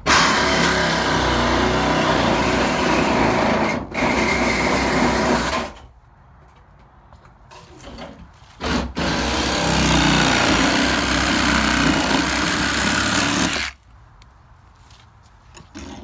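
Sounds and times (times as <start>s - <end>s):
power tool running: 8.9s - 13.8s.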